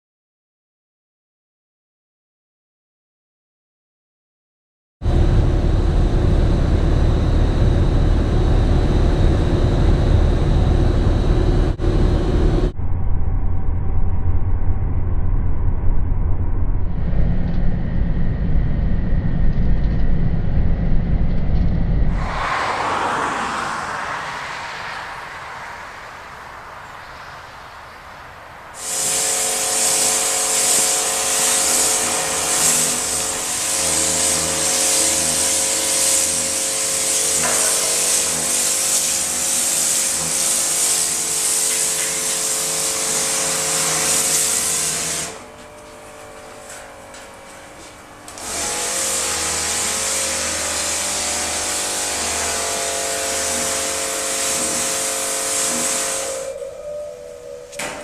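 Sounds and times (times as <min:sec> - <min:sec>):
woodworking machine cutting wood: 0:28.8 - 0:58.0.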